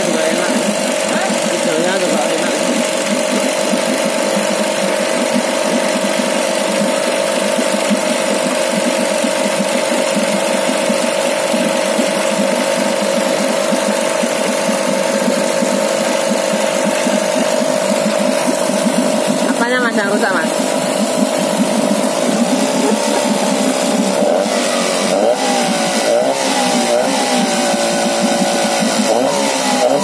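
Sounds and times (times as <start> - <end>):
outboard motor idling: 0.0 - 30.0.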